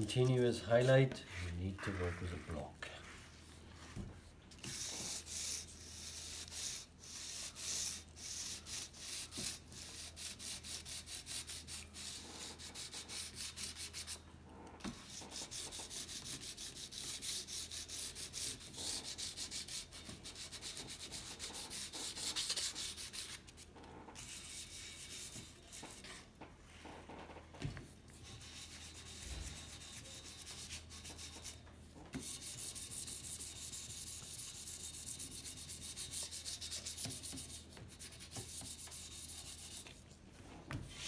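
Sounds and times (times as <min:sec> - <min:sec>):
sandpaper rubbing on metal tube: 0:00.1 - 0:03.4, 0:04.7 - 0:14.2, 0:15.0 - 0:23.4, 0:28.3 - 0:31.6, 0:32.2 - 0:40.1.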